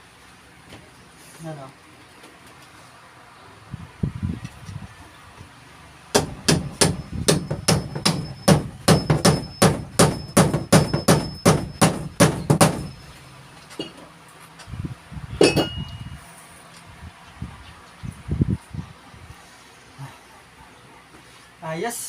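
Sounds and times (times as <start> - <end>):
hammer nailing: 6.1 - 13.0.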